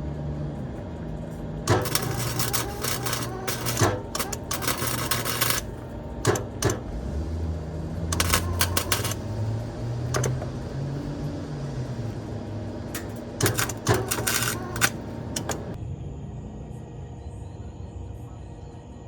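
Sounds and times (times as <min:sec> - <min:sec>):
low hum: 0:00.0 - 0:15.8
arc welding crackle: 0:00.6 - 0:15.8.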